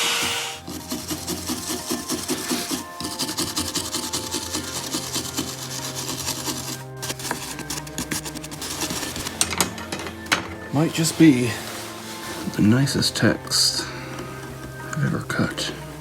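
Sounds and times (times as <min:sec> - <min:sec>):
router scratching and rasping wood: 0:00.0 - 0:09.7.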